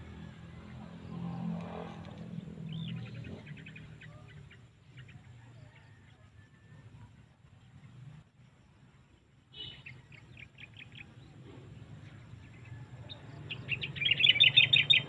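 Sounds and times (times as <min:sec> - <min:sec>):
small birds chirping: 0:02.1 - 0:05.8, 0:09.5 - 0:15.0.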